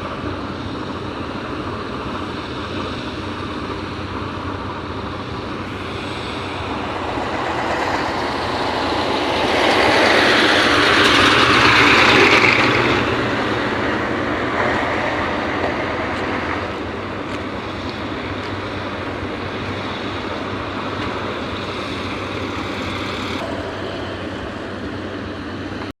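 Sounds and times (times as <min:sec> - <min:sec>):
broad rushing noise: 0:00.0 - 0:26.0
low engine drone: 0:00.0 - 0:26.0.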